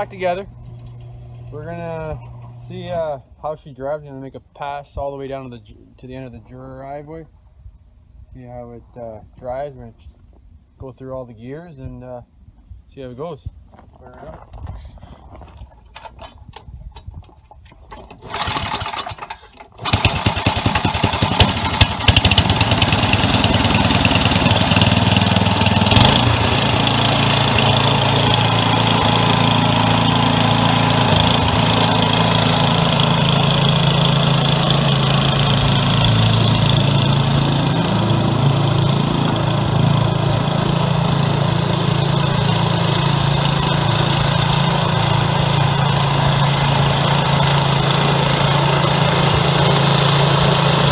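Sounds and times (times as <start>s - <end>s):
snowblower engine starting and running: 0.0s - 3.1s, 17.6s - 50.9s.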